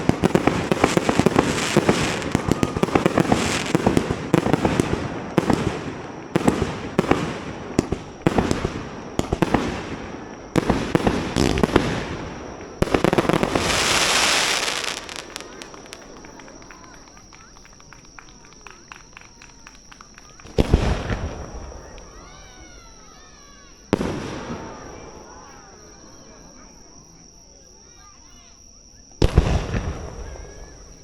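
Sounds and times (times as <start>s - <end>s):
fireworks crackling and popping: 0.0s - 22.7s, 23.9s - 24.9s, 29.2s - 31.0s
fireworks booms: 0.0s - 23.1s, 23.8s - 25.5s, 29.2s - 31.0s
loud hissing rush: 13.0s - 15.7s.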